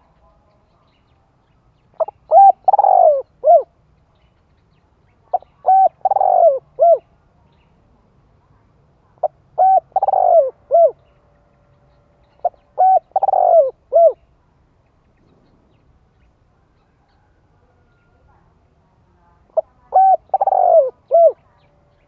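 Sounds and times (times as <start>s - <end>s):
dove cooing: 2.0s - 3.8s, 5.3s - 7.1s, 9.2s - 11.0s, 12.4s - 14.2s, 19.5s - 21.4s.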